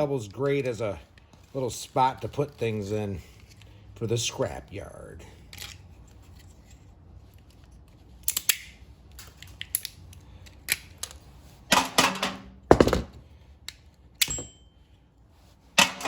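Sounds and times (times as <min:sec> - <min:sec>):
small parts clicking and knocking: 0:05.5 - 0:11.2, 0:11.8 - 0:14.6
clatter and thump: 0:11.8 - 0:13.2.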